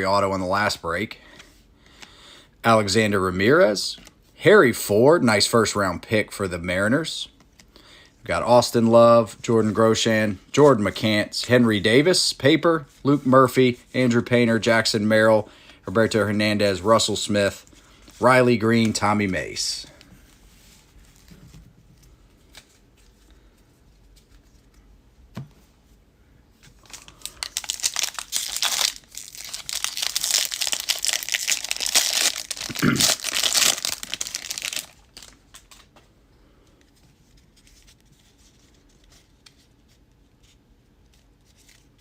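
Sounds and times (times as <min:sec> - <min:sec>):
wrapper tearing and crinkling: 0:26.8 - 0:35.9.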